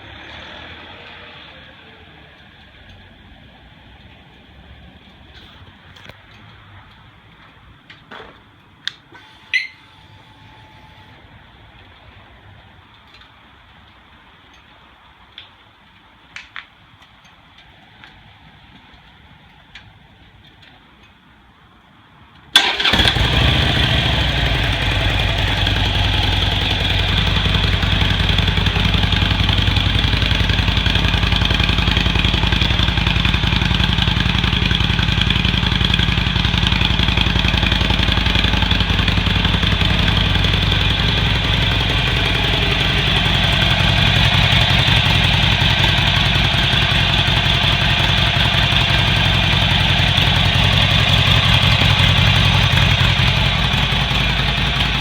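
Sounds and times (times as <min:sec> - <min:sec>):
motorcycle engine starting and idling: 0:22.5 - 0:55.0.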